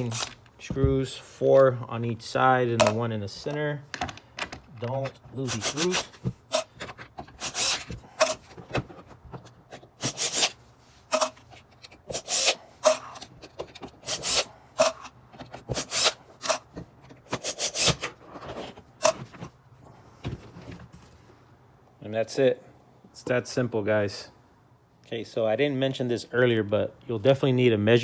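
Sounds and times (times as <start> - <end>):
wood and plastic scraping: 2.7 - 21.3.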